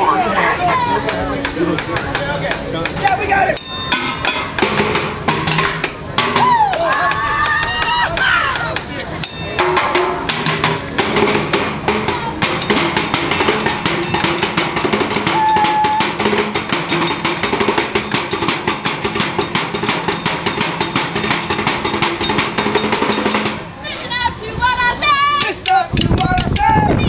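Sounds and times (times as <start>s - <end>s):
clatter of metal knocks: 9.6s - 23.6s.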